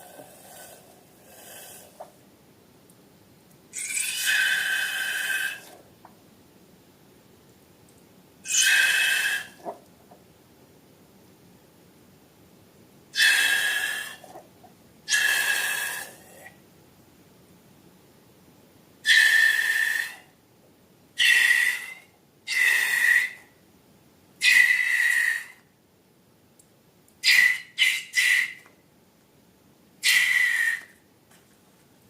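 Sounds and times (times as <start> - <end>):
air squealing from balloon neck: 3.8 - 5.8, 8.5 - 9.7, 13.2 - 14.4, 15.1 - 16.2, 21.2 - 23.4, 24.4 - 25.6, 27.2 - 28.6, 30.0 - 30.9.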